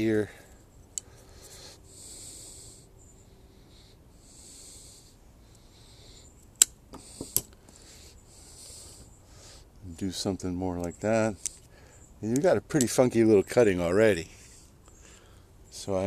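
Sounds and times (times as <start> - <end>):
breathing through the nose: 0.3 - 6.3, 7.0 - 9.7, 11.4 - 12.1, 14.5 - 15.5.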